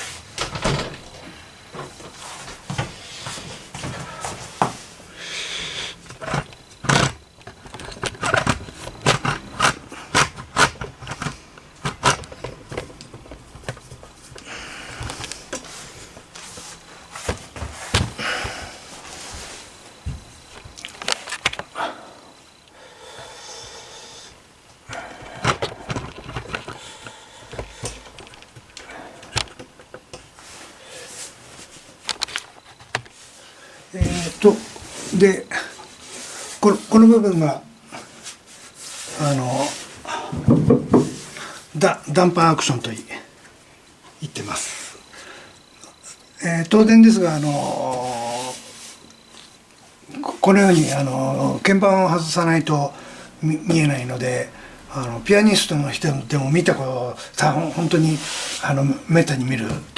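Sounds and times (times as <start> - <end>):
wood rubbing: 37.9 - 41.6
wooden knocks and clicks: 40.3 - 41.3.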